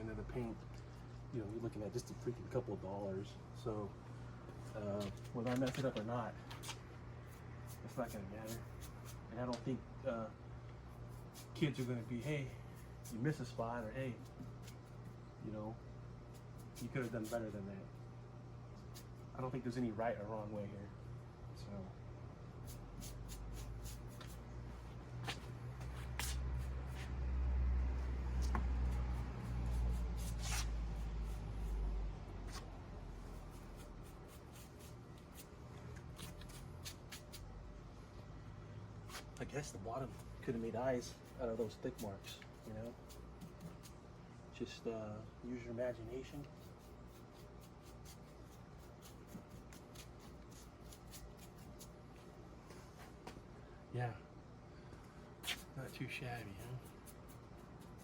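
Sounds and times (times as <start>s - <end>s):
scratchy paint strokes: 6.6s - 9.2s, 10.9s - 15.2s, 16.3s - 17.6s, 18.9s - 19.3s, 22.6s - 27.2s, 28.2s - 37.5s, 40.0s - 44.0s, 46.3s - 53.0s, 55.4s - 58.0s.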